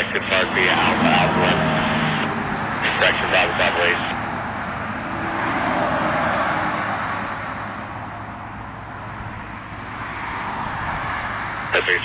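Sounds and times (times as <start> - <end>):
aircraft engine rushing: 0.0 - 12.0
low hum: 0.0 - 12.0.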